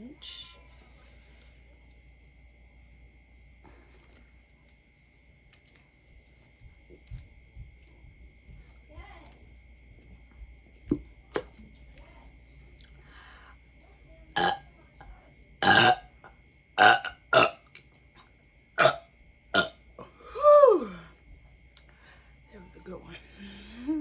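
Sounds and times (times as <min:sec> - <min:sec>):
woman belching loudly: 0:14.4 - 0:14.7, 0:15.6 - 0:16.1, 0:16.8 - 0:17.6, 0:18.8 - 0:19.0, 0:19.6 - 0:20.8.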